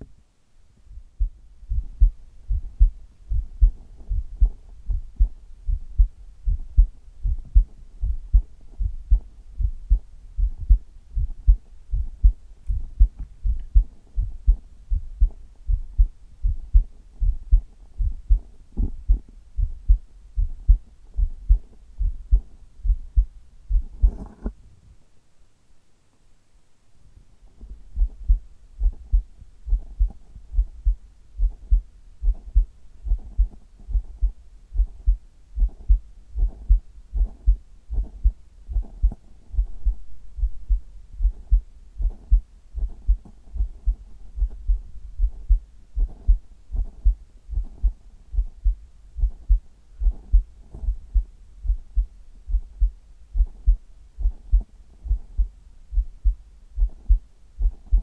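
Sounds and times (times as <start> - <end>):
low background hum: 0.0 - 58.0
heartbeat thuds: 0.8 - 24.5, 27.6 - 58.0.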